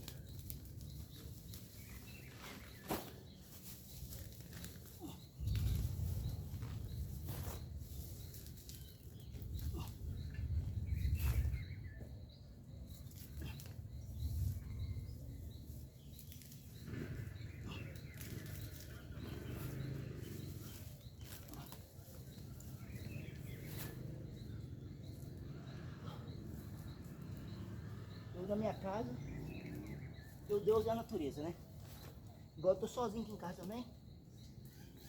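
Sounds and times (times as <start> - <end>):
rustling: 0.0 - 10.0
low rumble on microphone: 5.2 - 30.6.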